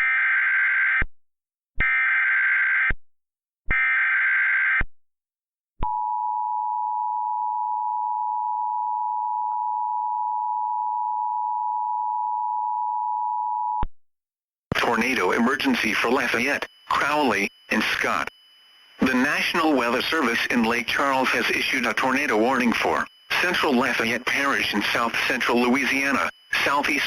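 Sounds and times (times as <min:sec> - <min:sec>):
data bursts: 0:14.7 - 0:27.0
steady two-tone attention signal: 0:14.8 - 0:27.0.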